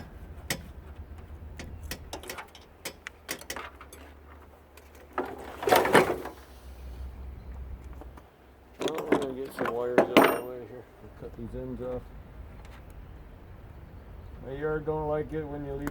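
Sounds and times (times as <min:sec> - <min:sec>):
scraping rustle: 0:03.5 - 0:07.1.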